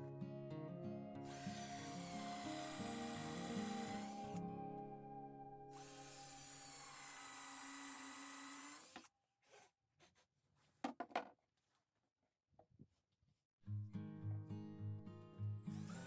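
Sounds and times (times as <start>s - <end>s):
power tool running: 1.3s - 4.4s, 5.8s - 9.1s.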